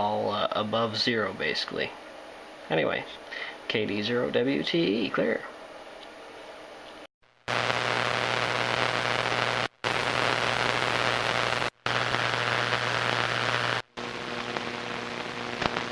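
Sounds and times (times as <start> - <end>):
steady electrical buzz: 7.2 - 15.9
harsh radio static hiss: 7.3 - 15.9.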